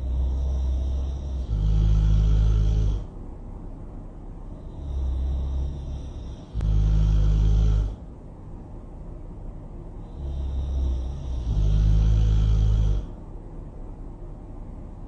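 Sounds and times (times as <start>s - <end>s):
loud deep snoring: 0.0s - 3.2s, 4.5s - 8.1s, 10.0s - 13.2s.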